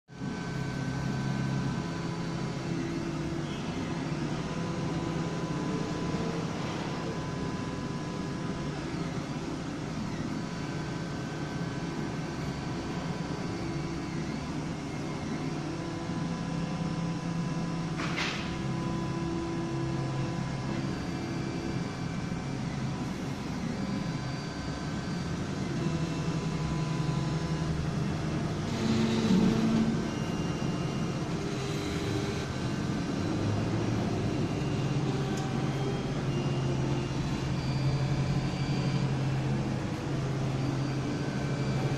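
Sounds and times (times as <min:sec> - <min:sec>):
steady printer hum: 0:00.1 - 0:41.9
stepper motors whining: 0:18.9 - 0:41.9.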